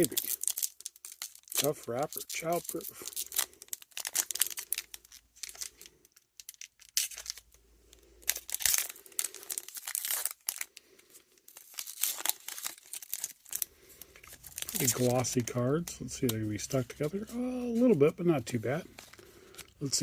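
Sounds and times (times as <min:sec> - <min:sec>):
wrapper tearing and crinkling: 0:00.0 - 0:15.4.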